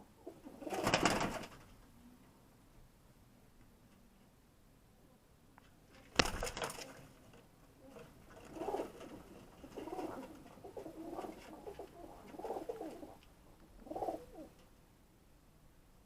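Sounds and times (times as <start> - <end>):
pigeons cooing: 0.0 - 1.1, 7.8 - 14.6.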